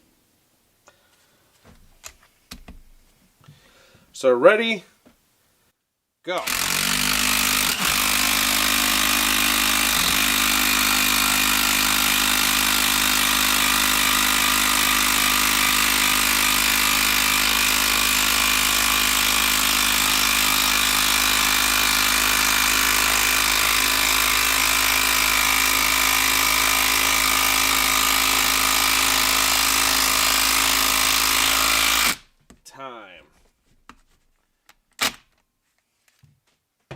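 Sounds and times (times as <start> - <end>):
impact driver hammering: 6.4 - 32.3.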